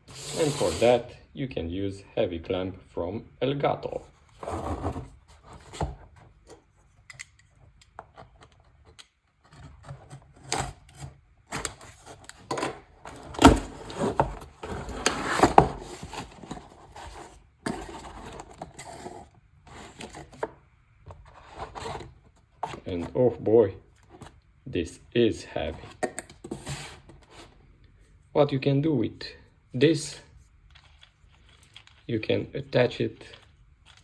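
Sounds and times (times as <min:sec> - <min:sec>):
packaging rubbing and rustling: 0:09.8 - 0:20.4.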